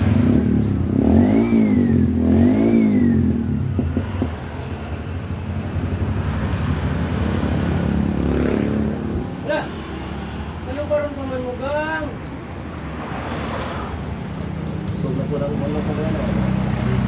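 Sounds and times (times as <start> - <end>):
vehicle engine revving: 0.0 - 4.4.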